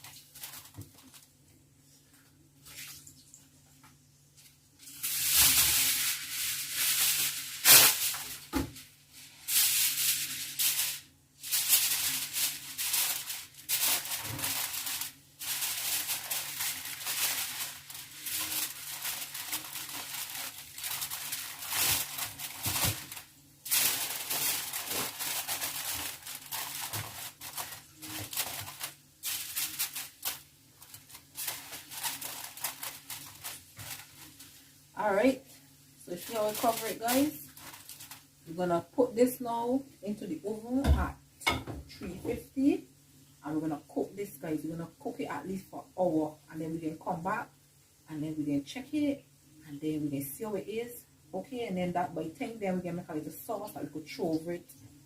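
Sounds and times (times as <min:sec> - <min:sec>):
aluminium foil crinkling: 0:00.0 - 0:01.4, 0:04.4 - 0:35.3, 0:36.1 - 0:38.6.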